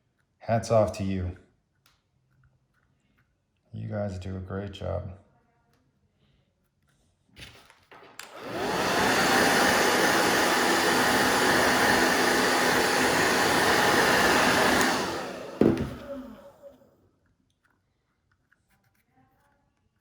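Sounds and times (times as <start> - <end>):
blow dryer blowing: 8.2 - 16.8
knock: 15.6 - 16.0.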